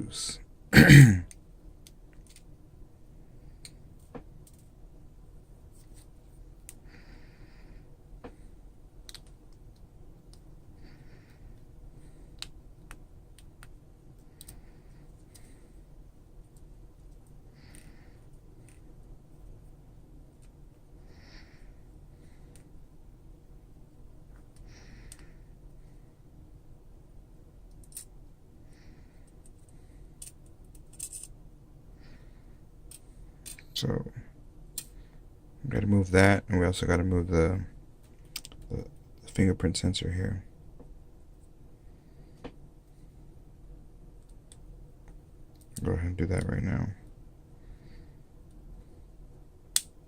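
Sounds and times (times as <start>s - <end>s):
steady low hum: 0.0s - 50.0s
small metal tools clicking: 30.2s - 31.3s.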